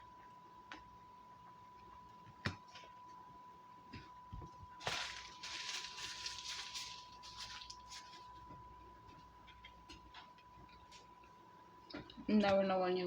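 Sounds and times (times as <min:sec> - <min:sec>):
faint high tone hum: 0:00.0 - 0:13.0
food wrapping crinkling: 0:04.7 - 0:11.1.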